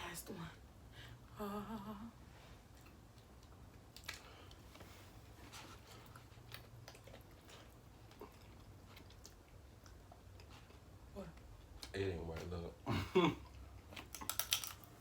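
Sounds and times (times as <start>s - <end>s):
low steady hum: 0.0s - 15.0s
chewing and eating clicks: 13.8s - 14.9s.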